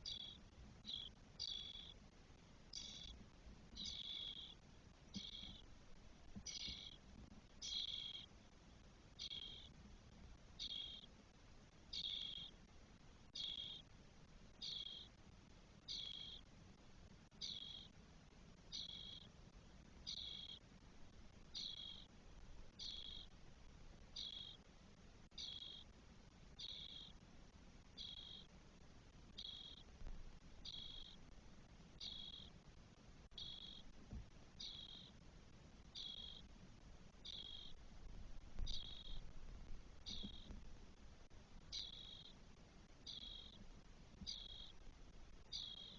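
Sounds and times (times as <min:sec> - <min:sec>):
nestlings begging calls: 0:00.0 - 0:02.0, 0:02.7 - 0:03.2, 0:03.8 - 0:05.6, 0:07.6 - 0:08.3, 0:09.2 - 0:09.7, 0:11.9 - 0:12.5, 0:13.4 - 0:13.8, 0:14.6 - 0:15.1, 0:15.9 - 0:16.4, 0:17.4 - 0:17.9, 0:18.7 - 0:19.3, 0:20.1 - 0:20.6, 0:21.6 - 0:22.1, 0:22.8 - 0:23.3, 0:24.2 - 0:24.6, 0:25.4 - 0:25.9, 0:26.6 - 0:27.1, 0:28.0 - 0:28.5, 0:29.4 - 0:29.9, 0:30.6 - 0:31.2, 0:32.0 - 0:32.5, 0:34.6 - 0:35.1, 0:36.0 - 0:36.5, 0:37.2 - 0:37.8, 0:38.7 - 0:39.2, 0:41.7 - 0:42.4, 0:43.1 - 0:43.6, 0:44.3 - 0:44.8.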